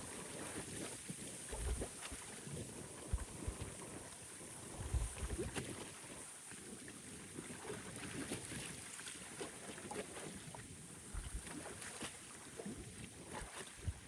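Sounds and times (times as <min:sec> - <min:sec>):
lake water splashing on shore: 0:00.0 - 0:14.0
gusty wind buffeting microphone: 0:04.6 - 0:05.6.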